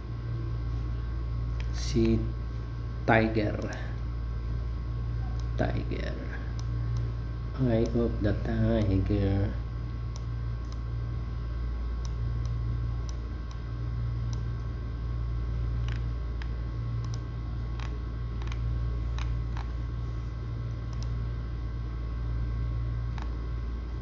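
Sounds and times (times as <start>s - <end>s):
low hum with high whine: 0.0s - 24.0s
small sharp clicks: 15.8s - 19.7s, 20.9s - 21.2s.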